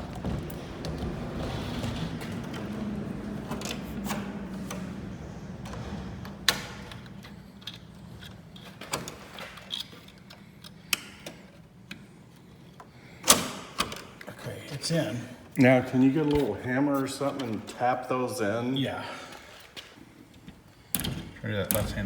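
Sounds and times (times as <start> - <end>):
wooden window clicks and knocks: 21.0 - 22.0.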